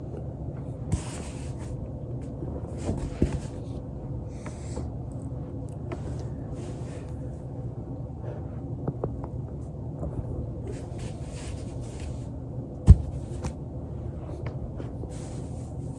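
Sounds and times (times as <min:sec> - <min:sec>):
steady low hum: 0:00.0 - 0:15.9
body rolling on foam roller: 0:12.9 - 0:13.6.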